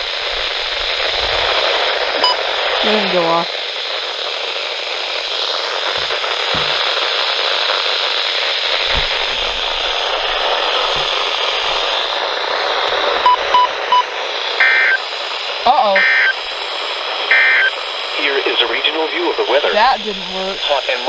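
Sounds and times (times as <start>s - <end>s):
radio static hiss: 0.0s - 21.0s
short quick beeps: 2.2s - 2.4s
faint knocks: 6.0s - 6.9s.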